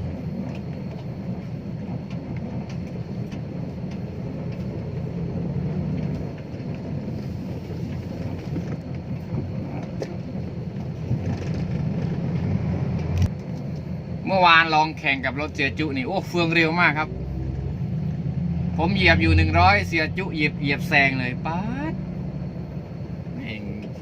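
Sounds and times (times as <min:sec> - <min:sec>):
diesel truck engine rumbling: 0:00.0 - 0:24.0.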